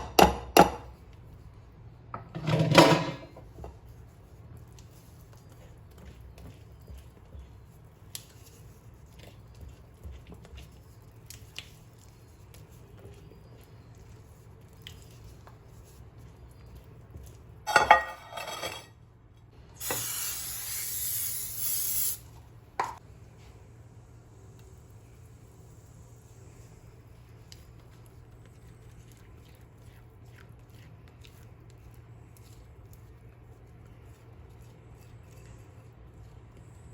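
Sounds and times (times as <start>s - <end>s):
dishes and utensils clattering: 2.2s - 3.4s, 17.7s - 19.0s.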